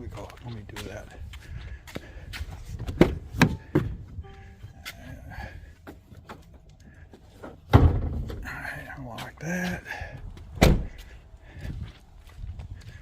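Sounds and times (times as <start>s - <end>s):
loud thump of van hood: 7.7s - 8.4s, 10.6s - 10.9s.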